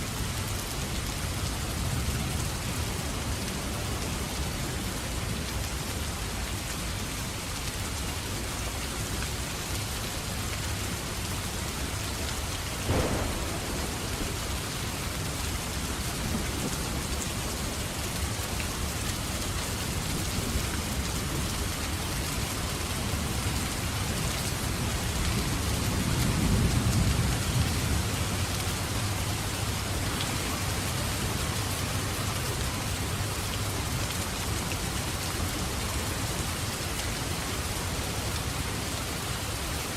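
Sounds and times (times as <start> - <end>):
heavy rain: 0.0 - 39.9
thunder crack: 12.8 - 17.0
low thunder rumble: 12.8 - 17.8.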